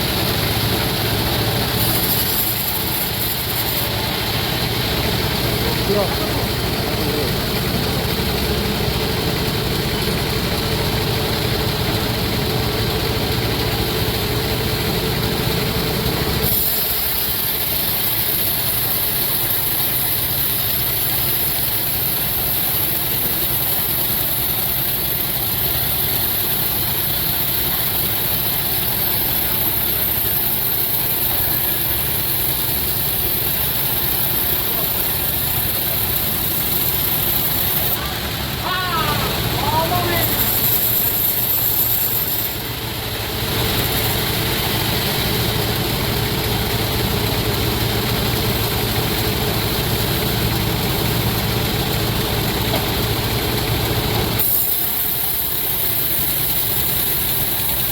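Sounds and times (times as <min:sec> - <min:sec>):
sawmill machinery drone: 0:00.0 - 0:57.9
steady high hiss: 0:15.0 - 0:57.9.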